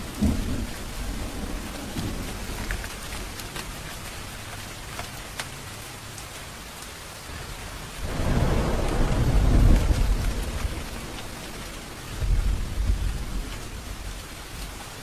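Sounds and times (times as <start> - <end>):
thunder rolling: 0.0 - 3.7, 8.0 - 14.7
individual raindrops: 0.0 - 15.0
steady rain falling: 0.0 - 15.0.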